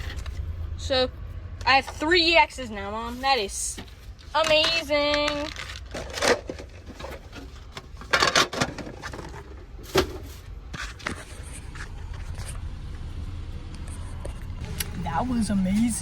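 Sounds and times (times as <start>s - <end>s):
steady low rumble: 0.0s - 6.0s, 11.4s - 16.0s.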